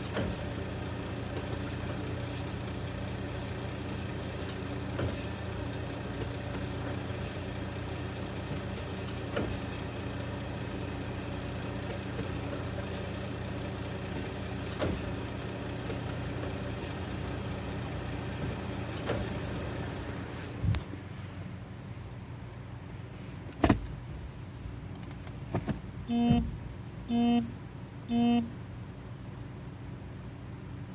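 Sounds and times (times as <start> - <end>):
transmission clunk: 24.9 - 26.6.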